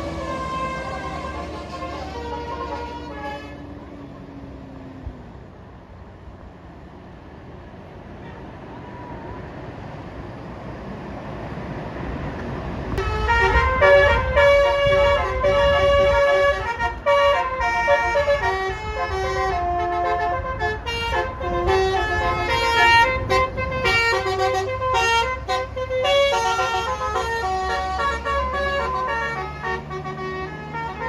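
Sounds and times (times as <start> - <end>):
bus horn playing quick melody: 0.0 - 3.8, 13.0 - 31.0
bus engine and road noise: 0.0 - 31.0.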